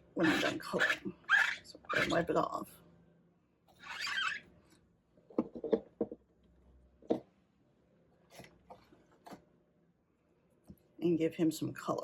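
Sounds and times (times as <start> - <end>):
tools tapping on a tabletop: 5.3 - 6.2.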